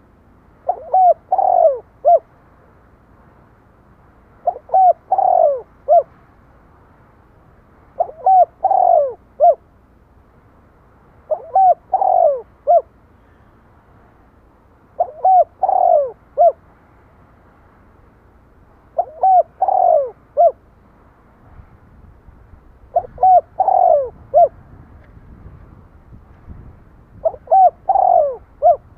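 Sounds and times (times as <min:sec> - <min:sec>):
dove cooing: 0:00.6 - 0:02.3, 0:04.4 - 0:06.1, 0:08.0 - 0:09.6, 0:11.3 - 0:12.9, 0:15.0 - 0:16.6, 0:19.0 - 0:20.6, 0:22.9 - 0:24.6, 0:27.2 - 0:28.9.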